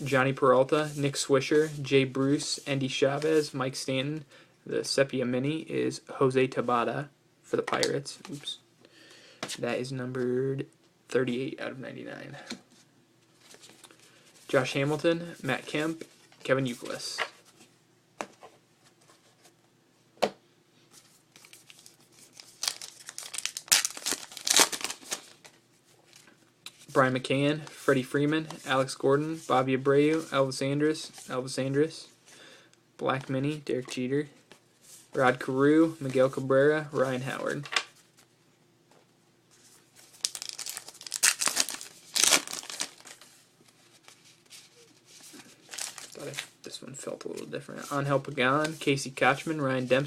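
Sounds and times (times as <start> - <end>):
wrapper crinkling and tearing: 21.3 - 25.6, 40.0 - 43.3, 45.6 - 46.5.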